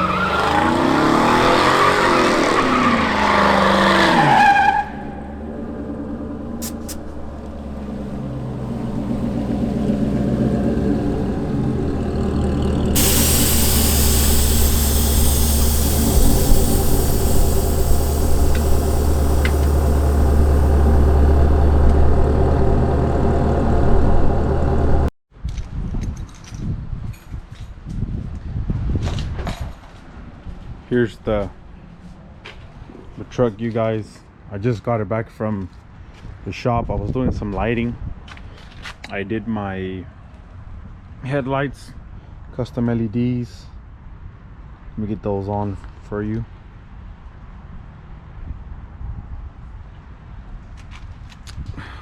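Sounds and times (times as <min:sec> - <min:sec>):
engine low drone: 0:05.0 - 0:25.1
hiss: 0:06.6 - 0:07.1, 0:12.9 - 0:22.9.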